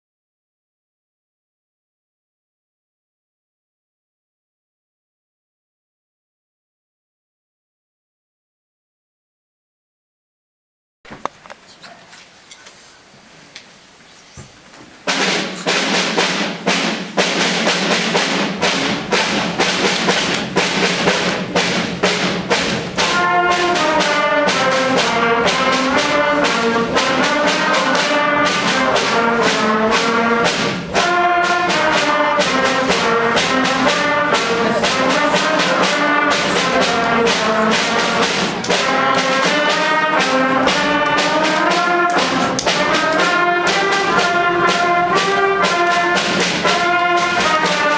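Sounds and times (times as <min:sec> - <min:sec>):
drum strokes: 0:15.0 - 0:47.9
brass band music: 0:15.1 - 0:47.9.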